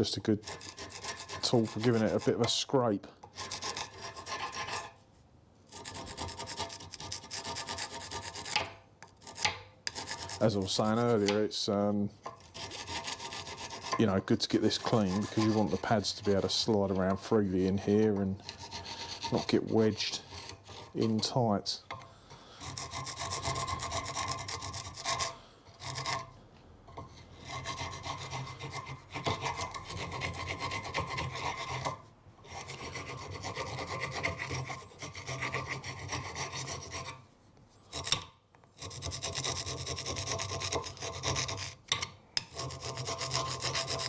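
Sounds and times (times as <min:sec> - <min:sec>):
rust scraping on steel: 0:00.0 - 0:05.0, 0:05.7 - 0:37.3, 0:37.9 - 0:44.0.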